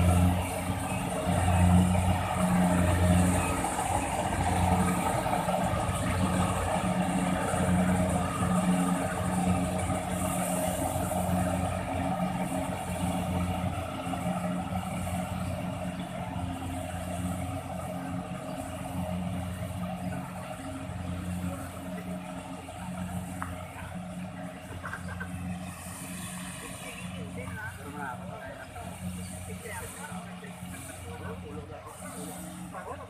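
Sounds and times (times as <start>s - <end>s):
harvester engine drone: 0.0s - 33.0s.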